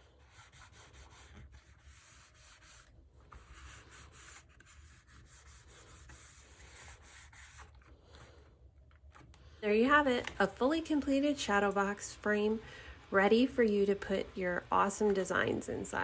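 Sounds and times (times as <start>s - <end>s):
cardstock rubbing: 0.0s - 8.4s.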